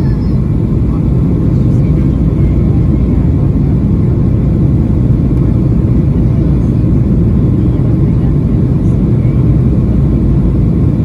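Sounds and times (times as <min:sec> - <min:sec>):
jet engines and airflow in cabin: 0:00.0 - 0:11.0.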